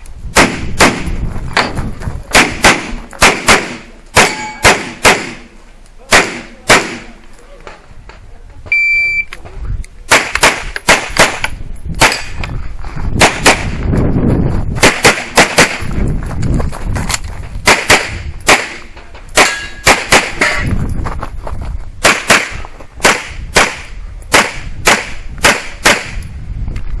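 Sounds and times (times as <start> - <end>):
handgun shots: 2.3 - 5.5, 6.1 - 7.2, 10.1 - 12.4, 17.6 - 20.6.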